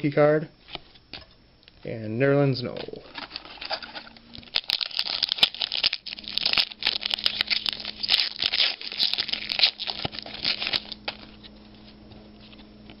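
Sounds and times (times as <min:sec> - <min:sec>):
foil wrapper tearing and crinkling: 0:03.1 - 0:11.6.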